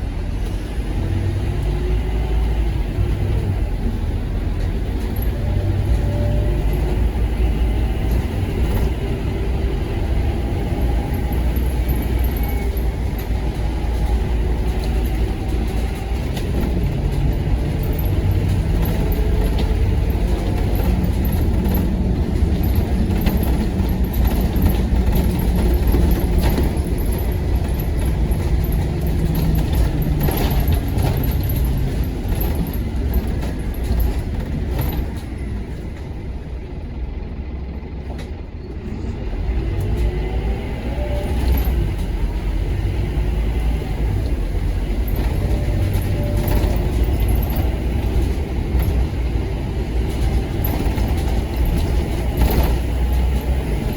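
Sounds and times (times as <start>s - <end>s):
bus diesel engine running: 0.0s - 53.9s
clicks and rattles: 11.1s - 35.8s, 45.0s - 53.9s.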